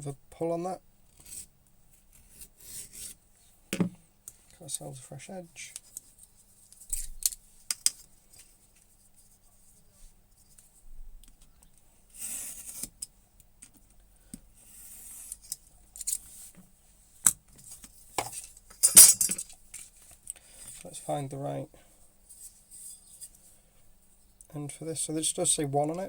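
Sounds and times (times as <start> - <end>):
blade scraping leather: 12.1 - 12.9
metal tools clicking: 18.8 - 19.6.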